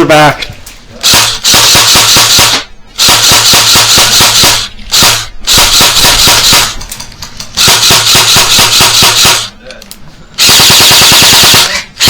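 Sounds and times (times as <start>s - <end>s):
airsoft gun firing full-auto: 1.0s - 6.8s, 7.6s - 9.5s, 10.4s - 11.8s.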